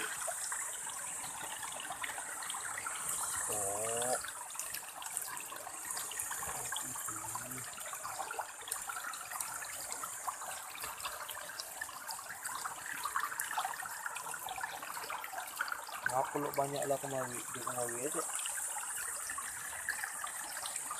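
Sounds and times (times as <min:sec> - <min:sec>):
river water rushing: 0:00.0 - 0:11.6
small sharp water splashes: 0:00.0 - 0:18.8.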